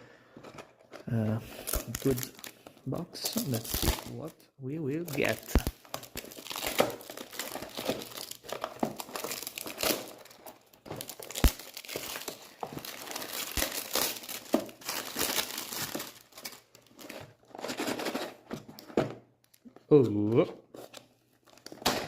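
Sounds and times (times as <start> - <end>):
packaging crinkling and tearing: 1.5 - 4.3, 5.0 - 18.5, 20.8 - 22.0.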